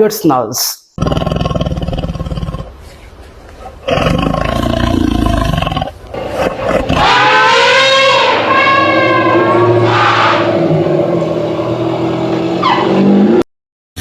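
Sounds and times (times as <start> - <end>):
deep rumbling growls: 1.0 - 2.9, 3.5 - 12.0
high wavering scream: 6.9 - 11.2.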